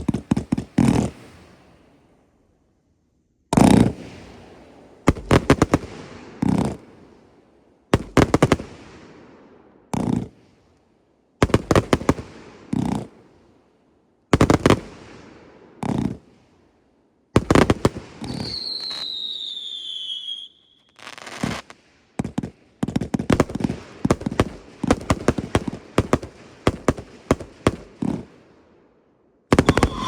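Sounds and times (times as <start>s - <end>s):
fireworks loud boom: 29.5s - 30.0s
echoing rumble: 29.6s - 30.0s.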